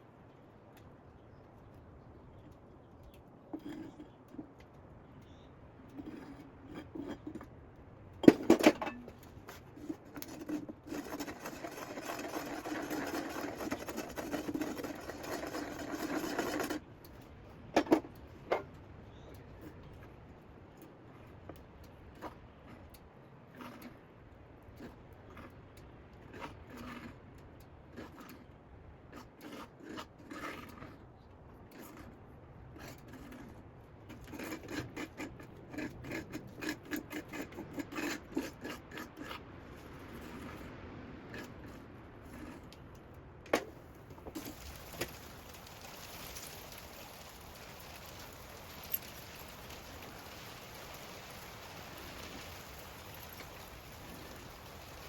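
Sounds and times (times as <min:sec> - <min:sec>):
scraping strokes: 0:09.5 - 0:16.8
steady hiss: 0:44.3 - 0:55.0.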